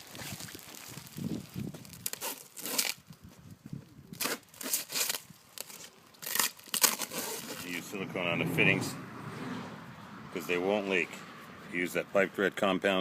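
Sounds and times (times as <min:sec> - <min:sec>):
rustling and crinkling: 0:00.0 - 0:07.9
short scraping noises: 0:04.2 - 0:09.8.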